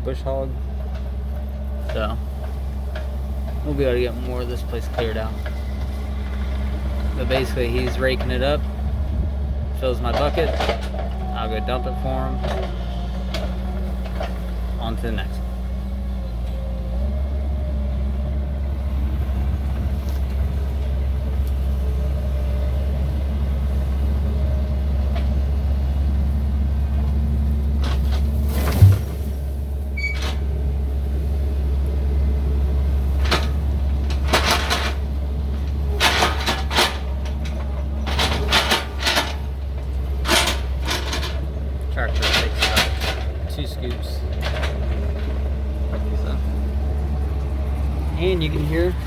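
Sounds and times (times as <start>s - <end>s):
tractor engine droning: 0.0s - 49.0s
loud thump: 28.5s - 29.4s.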